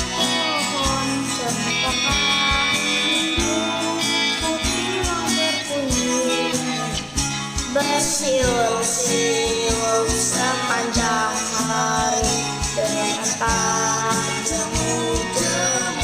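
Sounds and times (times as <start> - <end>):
karaoke backing music with beat: 0.0 - 16.0.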